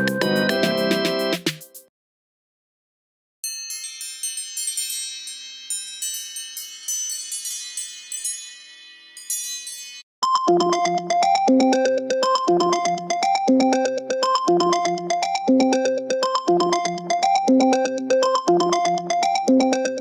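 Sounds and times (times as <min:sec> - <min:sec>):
synthesizer ringtone melody: 0:00.0 - 0:01.4, 0:10.2 - 0:20.0
tinkling chime ringtone: 0:03.4 - 0:20.0.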